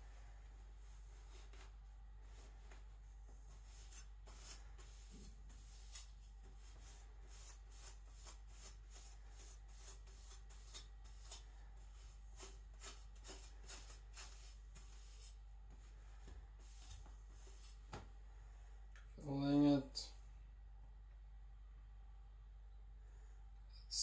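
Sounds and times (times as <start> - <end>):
knife edge scratchy strokes: 3.5 - 15.9, 16.6 - 17.9.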